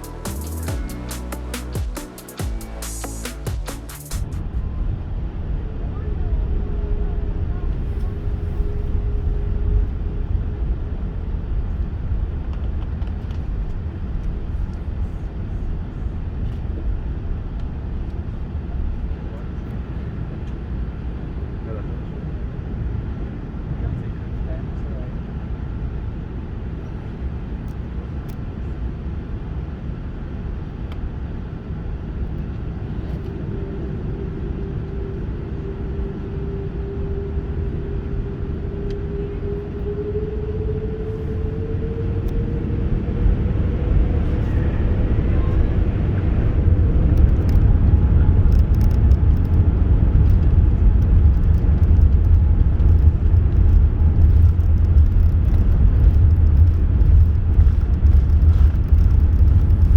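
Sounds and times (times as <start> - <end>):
jet engines spooling up: 0.0 - 10.2, 31.5 - 59.9
rising engine whine: 0.0 - 27.6, 29.8 - 59.9
low engine rumble: 0.0 - 59.9.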